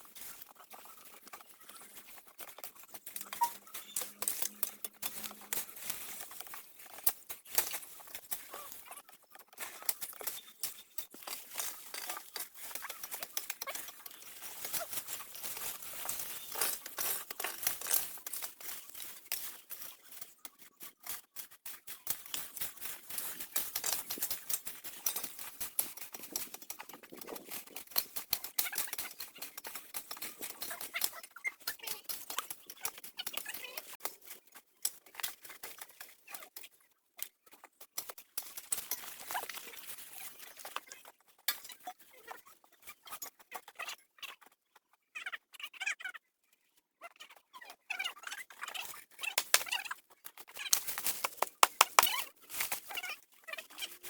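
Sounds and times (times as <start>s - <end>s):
rustling of dry material: 0.0s - 31.0s, 50.6s - 54.0s.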